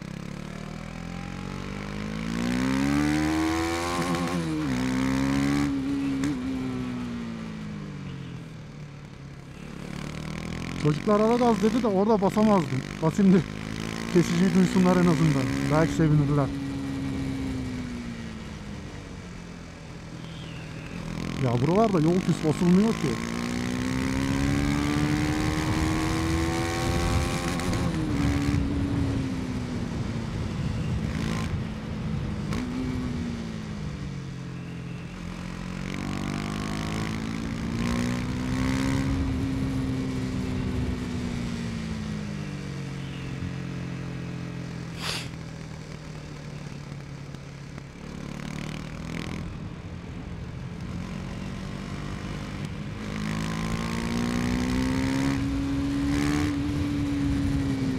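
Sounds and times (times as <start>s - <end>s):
motorcycle engine revving: 0.0s - 8.3s, 9.0s - 57.9s.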